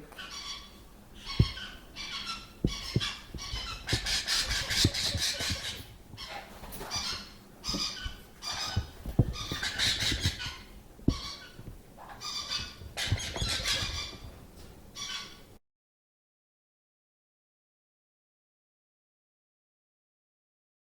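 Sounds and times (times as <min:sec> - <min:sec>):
parrot chicks squawking: 0:00.2 - 0:14.4, 0:15.0 - 0:15.5
soft bumps: 0:01.2 - 0:14.7.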